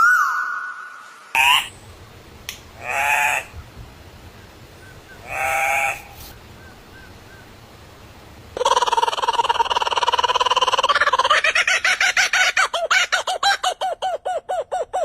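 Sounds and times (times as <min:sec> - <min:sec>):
rapidly pulsing animal call: 0:08.6 - 0:15.0.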